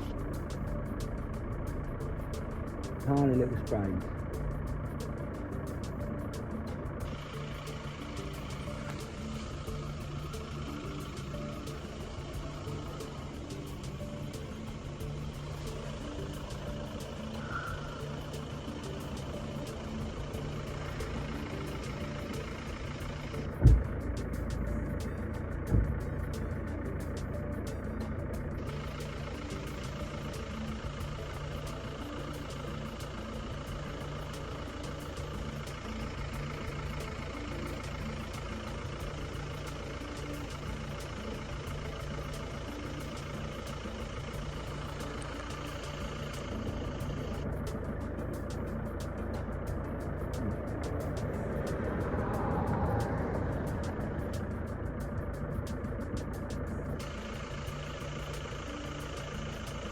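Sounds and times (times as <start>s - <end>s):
low mechanical hum: 0.0s - 59.9s
sharp thumps: 23.6s - 24.0s.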